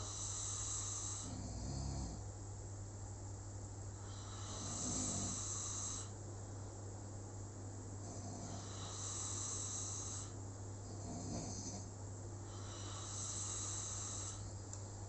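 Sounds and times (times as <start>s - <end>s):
person snoring: 0.0s - 2.2s, 4.0s - 6.2s, 8.0s - 11.9s, 12.5s - 14.5s
steady low hum: 0.0s - 15.0s.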